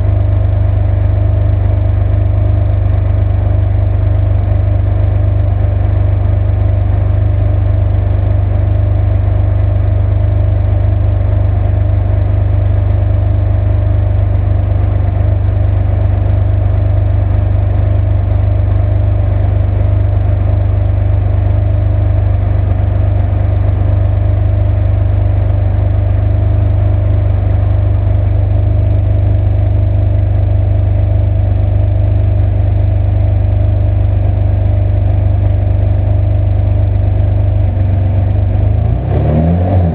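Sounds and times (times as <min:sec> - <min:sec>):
car engine idling: 0:00.0 - 0:39.9.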